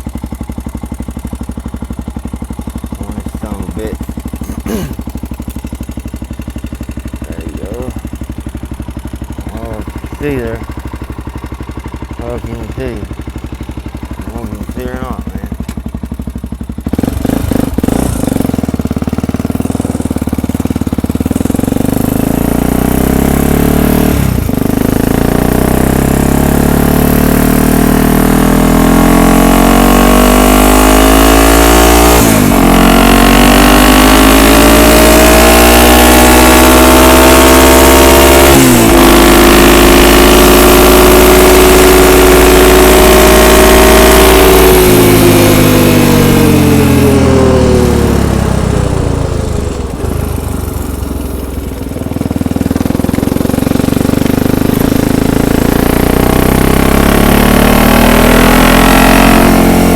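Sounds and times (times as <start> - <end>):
atv engine shifting gears: 0.0 - 59.9.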